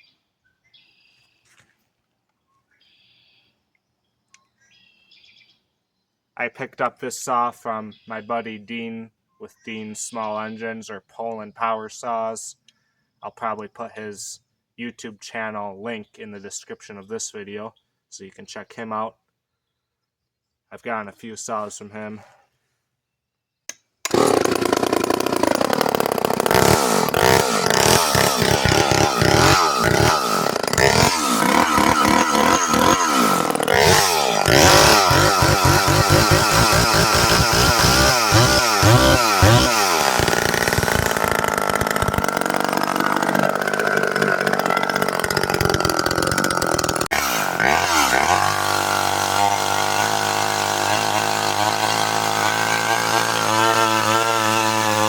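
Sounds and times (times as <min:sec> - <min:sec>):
chainsaw revving and idling: 0:24.0 - 0:55.0.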